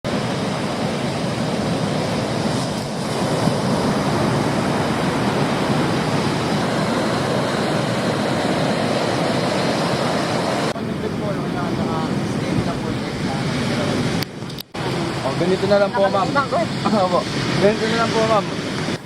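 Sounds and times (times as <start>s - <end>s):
ocean surf breaking: 0.1s - 19.0s.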